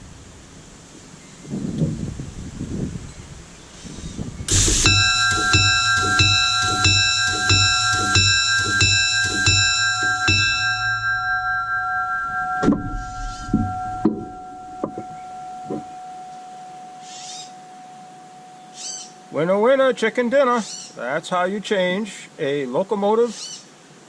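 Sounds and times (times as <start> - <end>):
dull clunk of bell mechanism: 4.5 - 18.7
locomotive bell ringing: 4.5 - 20.8.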